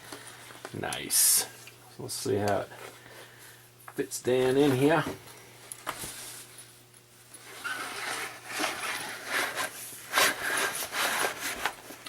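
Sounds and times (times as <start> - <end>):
canvas sleeve rustling and scraping: 6.0 - 6.7, 7.4 - 12.0.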